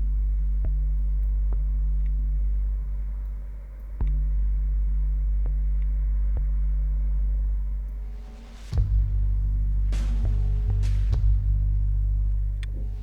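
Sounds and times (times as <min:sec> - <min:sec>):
light ticks: 0:00.6 - 0:02.3, 0:03.2 - 0:04.2
deep synth bass and chord: 0:08.8 - 0:13.0.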